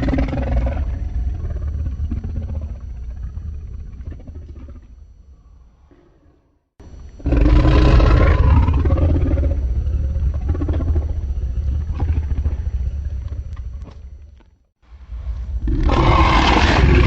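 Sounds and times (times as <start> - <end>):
deep low rumble: 0.0 - 5.5, 6.8 - 17.0
monster roar: 15.6 - 17.0.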